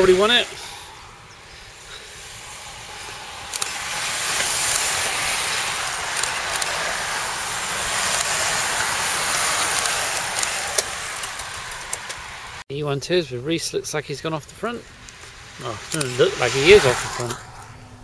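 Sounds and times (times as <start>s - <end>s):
bicycles rushing past: 0.0s - 12.6s, 14.6s - 18.0s
sharp clicks: 3.4s - 6.9s, 8.0s - 12.3s.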